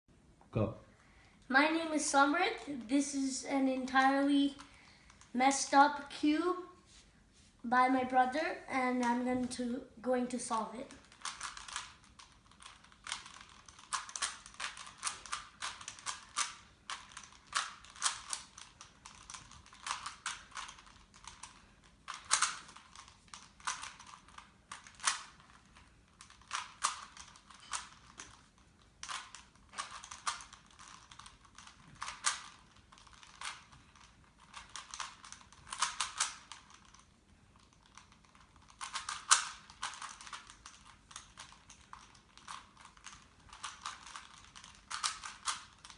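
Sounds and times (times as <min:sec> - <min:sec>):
puzzle cube plastic clicks: 0:10.8 - 0:45.9.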